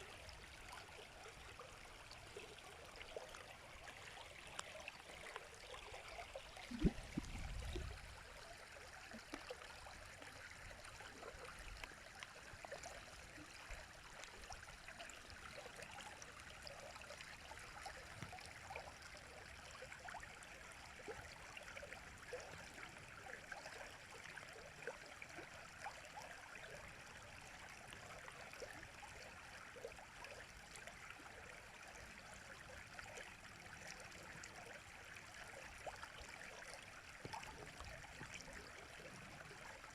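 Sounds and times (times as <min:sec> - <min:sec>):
river flowing: 0:00.0 - 0:17.2.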